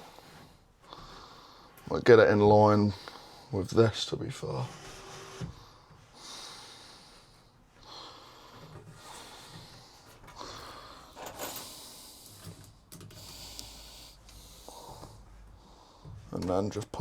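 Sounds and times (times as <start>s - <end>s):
man breathing: 0.0s - 1.9s, 2.9s - 3.6s, 5.5s - 16.3s.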